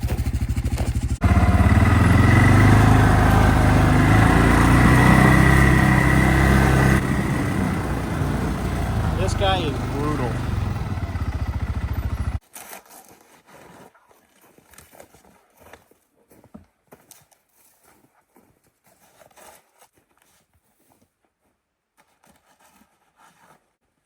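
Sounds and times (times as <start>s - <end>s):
engine idling: 0.0s - 12.4s.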